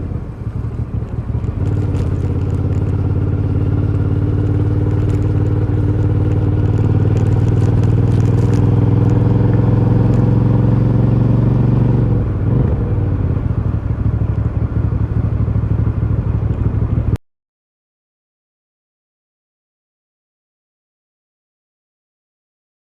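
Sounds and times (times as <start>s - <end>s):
motorcycle engine revving and idling: 0.0s - 17.2s.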